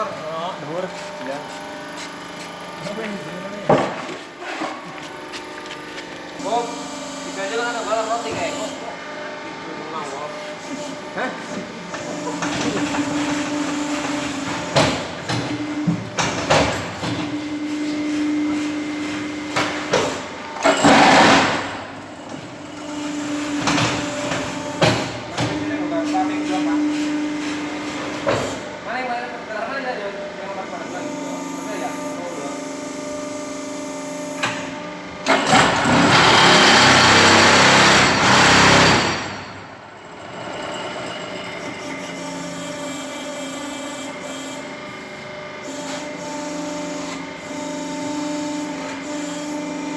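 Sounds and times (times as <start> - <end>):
hydraulic power unit humming: 0.0 - 49.1
loud harsh machine noise: 0.0 - 49.9.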